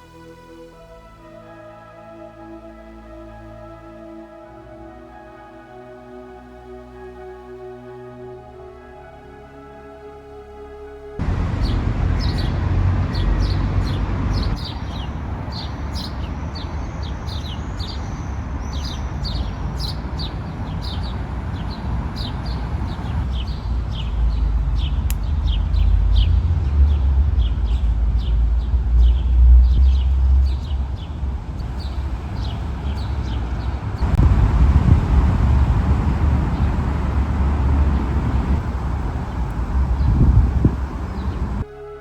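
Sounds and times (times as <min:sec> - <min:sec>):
steady low rumble: 0:00.0 - 0:42.0
small birds chirping: 0:11.6 - 0:34.2.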